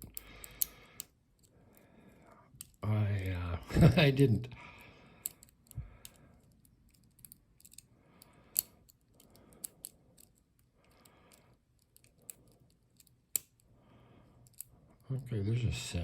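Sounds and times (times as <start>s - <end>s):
lock pick clicking in padlock: 2.6s - 2.8s, 5.2s - 13.6s, 14.4s - 14.7s.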